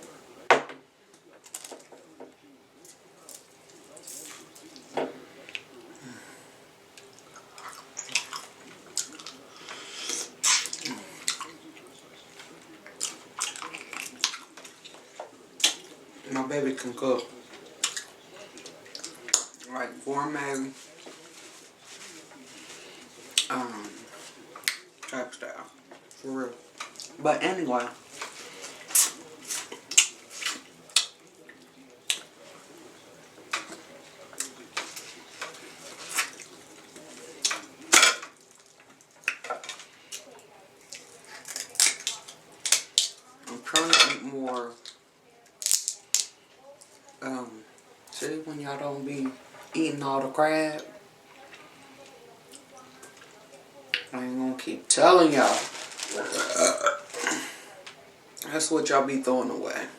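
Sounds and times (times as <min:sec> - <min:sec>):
wet chewing of crab legs: 0:07.0 - 0:09.7
chewing: 0:07.0 - 0:16.2, 0:17.2 - 0:19.7, 0:28.0 - 0:43.2
crab shells cracking: 0:40.9 - 0:43.2, 0:45.6 - 0:47.0.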